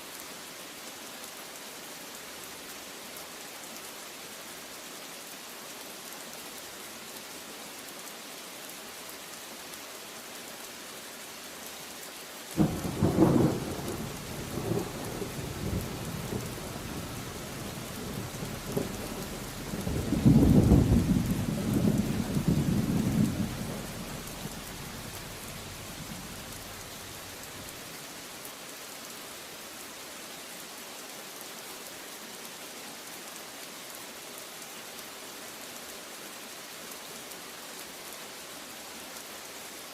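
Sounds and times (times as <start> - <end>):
steady rain: 0.0 - 39.9
thunder clap and rumble: 12.6 - 27.6.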